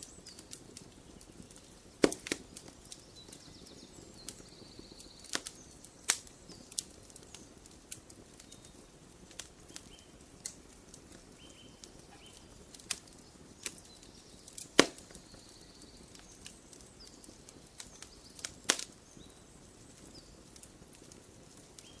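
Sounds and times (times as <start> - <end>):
campfire crackling and popping: 0.0 - 22.0
faint bird chirps: 2.8 - 7.6, 11.3 - 20.4.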